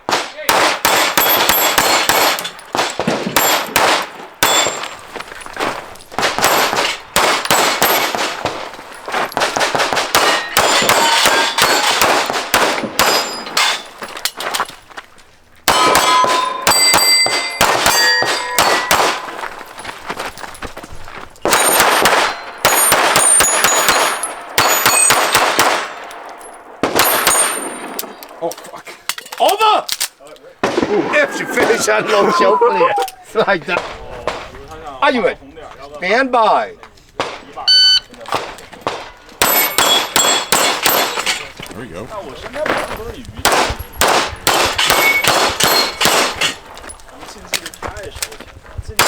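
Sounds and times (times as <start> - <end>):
rapid pistol shots: 0.0 - 4.9, 6.2 - 8.7, 9.4 - 13.4, 15.7 - 19.4, 21.5 - 26.1, 38.3 - 41.2, 43.4 - 46.6
steel plate targets ringing: 0.8 - 2.8, 4.4 - 5.1, 10.2 - 14.1, 15.7 - 19.9, 21.4 - 28.2, 39.4 - 41.5, 43.6 - 46.7.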